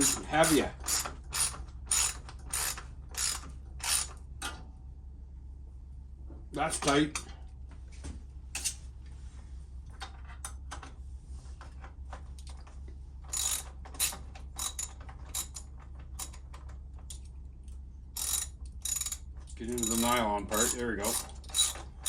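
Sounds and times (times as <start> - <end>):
ratchet wrench clicking: 0.0 - 4.1, 13.3 - 15.6, 18.2 - 19.2, 19.8 - 21.9
steady low hum: 0.0 - 22.0.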